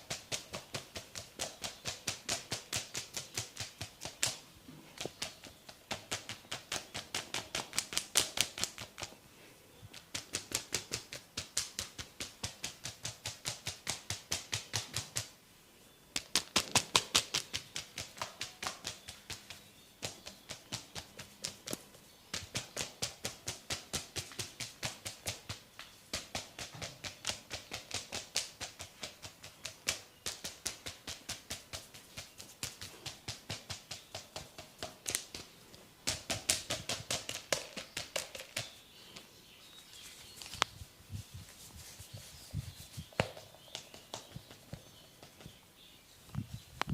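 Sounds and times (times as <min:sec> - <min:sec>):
hands tapping on head: 0:16.2 - 0:35.5.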